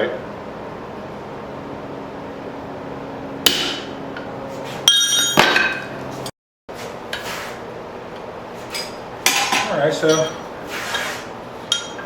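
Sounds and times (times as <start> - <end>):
hammer striking steel on anvil: 3.4 - 6.0, 8.8 - 10.5, 11.7 - 12.0.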